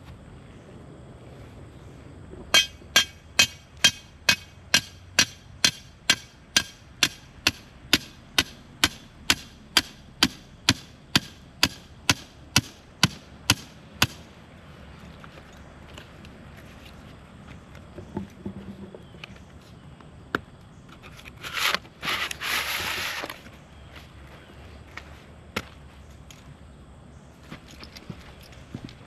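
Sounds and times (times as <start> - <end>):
hammer blows driving stake: 2.6 - 14.2.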